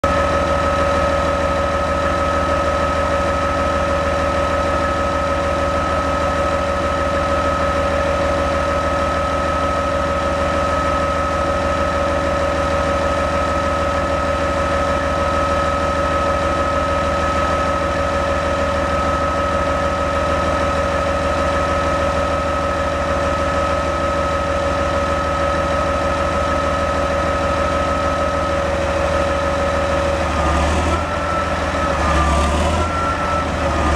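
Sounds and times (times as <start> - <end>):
diesel engine running steadily: 0.0 - 33.9
steady high whine: 13.6 - 33.9.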